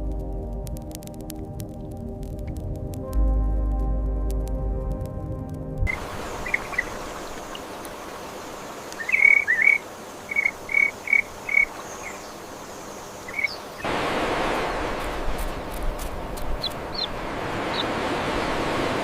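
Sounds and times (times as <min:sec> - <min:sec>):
music: 0:00.0 - 0:06.0
outdoor background noise: 0:00.0 - 0:19.0
rush of noise: 0:13.8 - 0:19.0.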